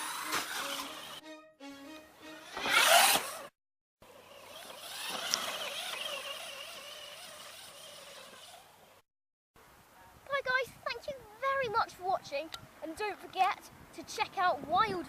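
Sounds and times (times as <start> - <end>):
electric motor whine of toy car: 0.0 - 1.2, 2.4 - 9.0.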